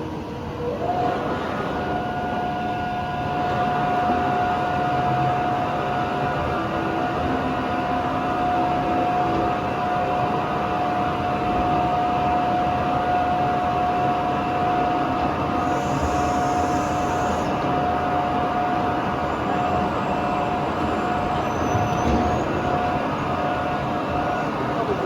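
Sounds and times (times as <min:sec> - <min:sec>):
milling machine whine: 0:00.0 - 0:25.0.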